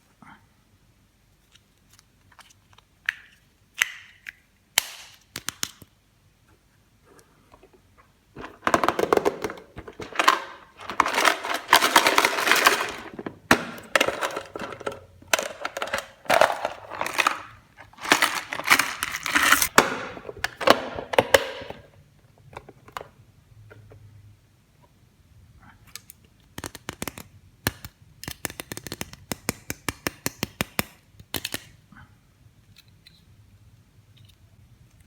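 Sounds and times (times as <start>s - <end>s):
packaging crackling and crinkling: 8.4s - 19.8s.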